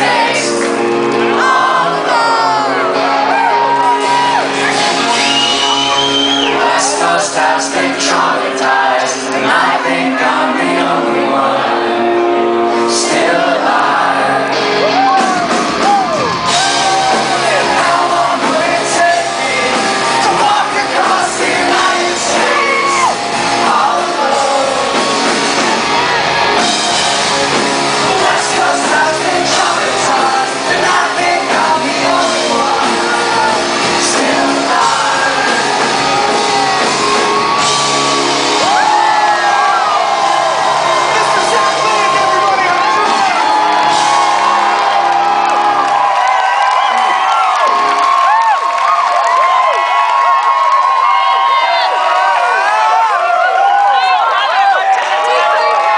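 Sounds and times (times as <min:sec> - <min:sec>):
person singing: 0:00.0 - 0:26.2, 0:27.0 - 0:44.8
rock band playing live: 0:00.0 - 0:55.9
people shouting: 0:14.8 - 0:24.8, 0:34.2 - 0:55.9.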